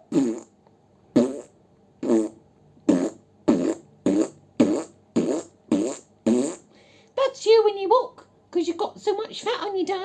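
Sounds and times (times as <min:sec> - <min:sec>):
squelchy fart-like blips: 0:00.0 - 0:00.6, 0:01.2 - 0:06.7.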